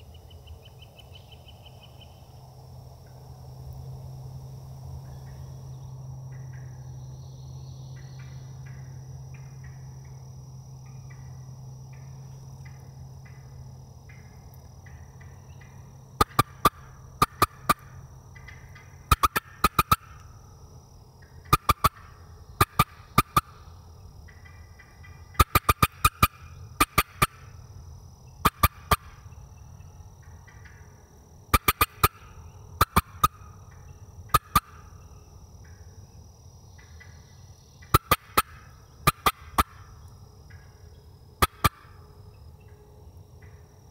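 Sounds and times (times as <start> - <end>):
turkey gobbling: 14.9 - 20.2, 21.5 - 23.6, 25.4 - 27.5, 28.4 - 29.2, 31.5 - 34.9, 37.8 - 39.9, 41.4 - 42.0
loud sharp clicks: 31.6 - 32.2, 41.4 - 41.9.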